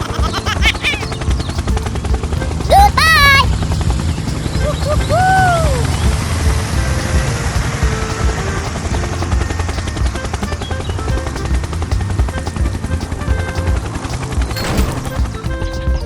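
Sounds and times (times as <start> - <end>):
plucky background music: 0.0 - 16.0
fast mechanical rattling: 3.5 - 16.0.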